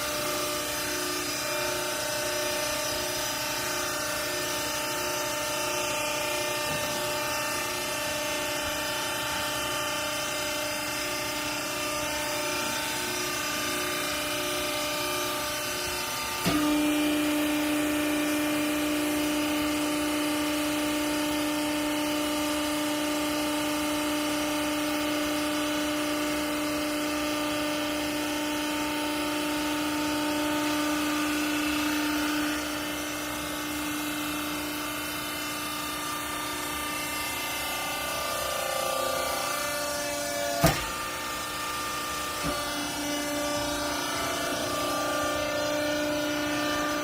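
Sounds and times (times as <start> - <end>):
machine drone: 0.0 - 16.6, 27.1 - 47.0
hydraulic pump humming: 0.0 - 47.0.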